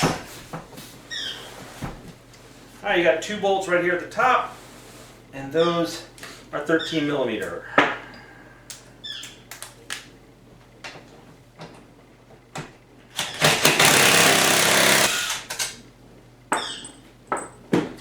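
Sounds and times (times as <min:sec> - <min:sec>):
impact driver running: 0:13.2 - 0:15.6.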